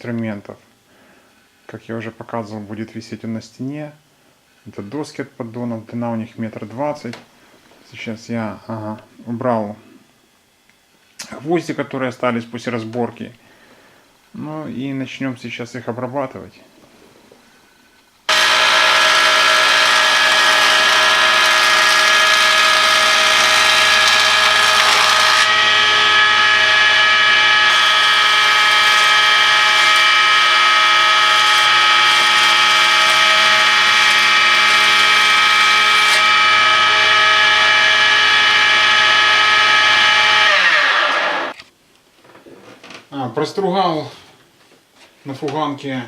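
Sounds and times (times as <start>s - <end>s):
electric jointer planing boards: 18.3s - 41.6s.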